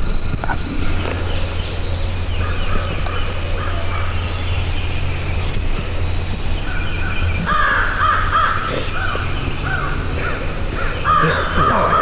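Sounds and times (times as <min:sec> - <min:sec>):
high steady whine: 0:00.0 - 0:12.0
turkey gobbling: 0:06.6 - 0:12.0.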